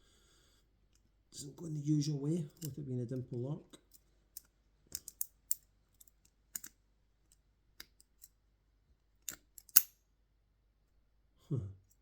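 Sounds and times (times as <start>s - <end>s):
lock pick metallic clicks: 3.9s - 6.8s, 9.2s - 10.0s.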